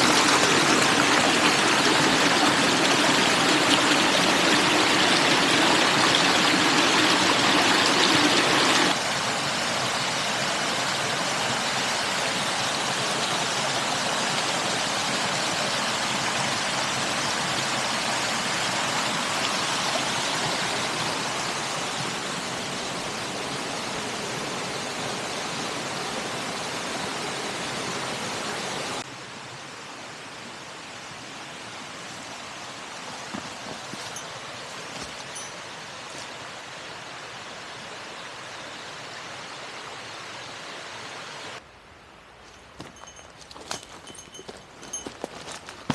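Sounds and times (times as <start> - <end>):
water rushing: 0.0 - 29.1, 42.8 - 45.9.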